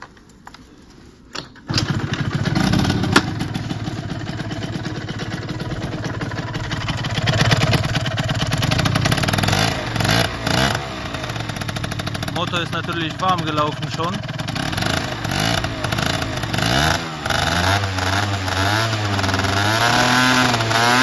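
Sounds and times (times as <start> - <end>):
scooter engine running: 1.7 - 21.0.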